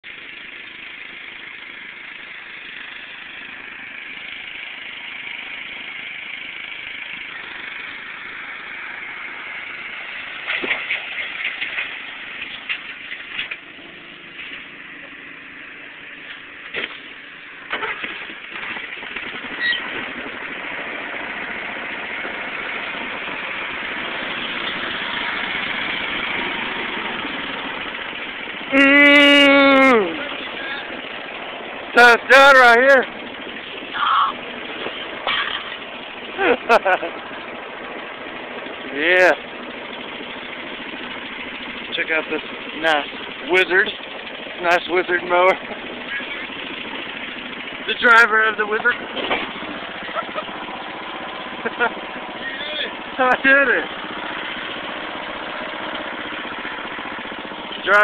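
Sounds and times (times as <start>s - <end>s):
riding lawn mower engines: 0.0s - 58.0s
knocks and clatter: 10.2s - 14.7s, 16.2s - 20.6s, 48.9s - 51.8s.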